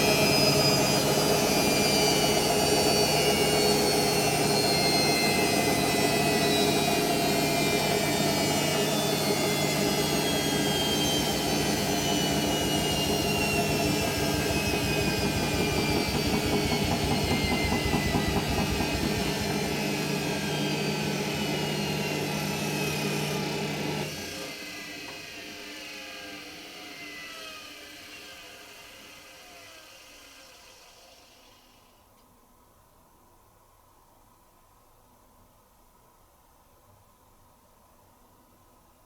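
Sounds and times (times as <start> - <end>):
washing machine drum spinning: 6.8 - 20.4
low hum: 7.6 - 20.7.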